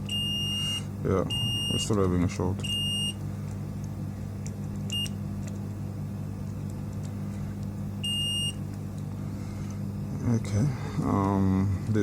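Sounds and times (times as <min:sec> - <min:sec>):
multimeter continuity beep: 0:00.0 - 0:01.9, 0:02.6 - 0:03.2, 0:04.9 - 0:05.2, 0:08.0 - 0:08.6
steady low hum: 0:00.0 - 0:12.0.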